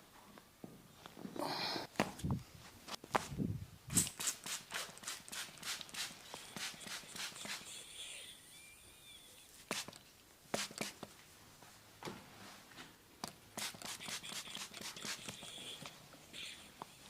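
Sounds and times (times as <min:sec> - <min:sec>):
hands slapping on skin: 0:09.6 - 0:10.0, 0:10.6 - 0:11.1, 0:13.2 - 0:15.4.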